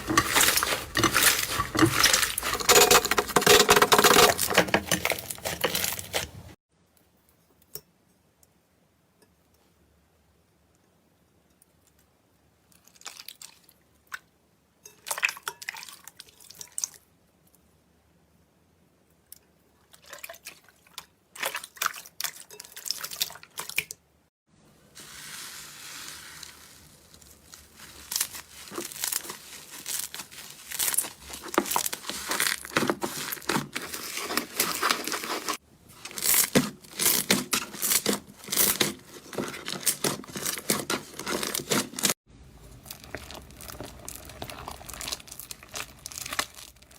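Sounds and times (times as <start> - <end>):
slime squelching and crackling: 0.0 - 6.6, 25.0 - 46.9.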